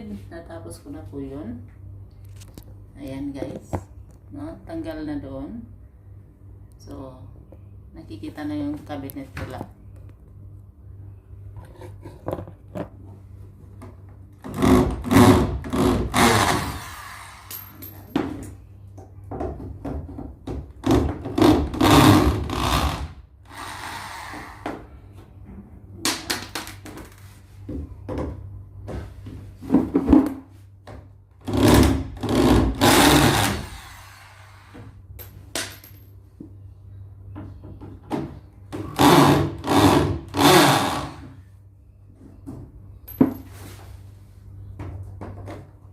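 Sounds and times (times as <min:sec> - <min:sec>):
electric hand drill running: 0:14.6 - 0:17.5, 0:21.4 - 0:24.6, 0:31.5 - 0:34.8, 0:39.0 - 0:41.3.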